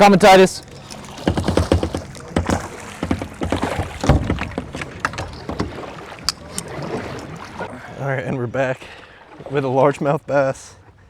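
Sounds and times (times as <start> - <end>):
paddle strokes splashing: 0.0 - 11.0
knocks and clunks: 0.3 - 7.7.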